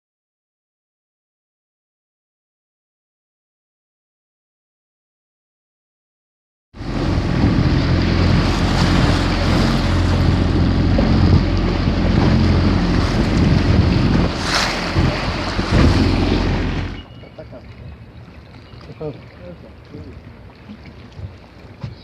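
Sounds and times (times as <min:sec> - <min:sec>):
steady low hum: 0:06.8 - 0:17.6
wind buffeting microphone: 0:06.8 - 0:18.3.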